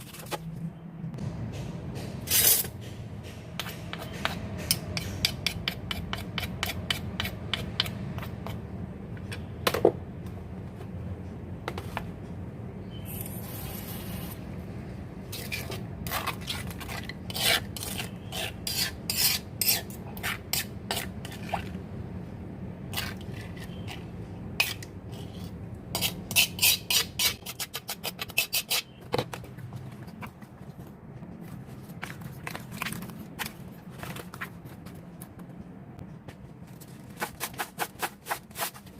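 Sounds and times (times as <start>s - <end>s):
steady low hum: 0.0s - 28.0s, 28.8s - 38.9s
utensils scraping against a bowl: 15.3s - 21.8s, 22.9s - 29.0s.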